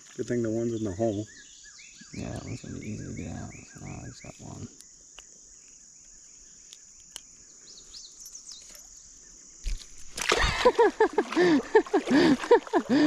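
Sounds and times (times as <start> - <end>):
bird chirps: 0.4 - 9.5
bursts of laughter: 10.4 - 13.0.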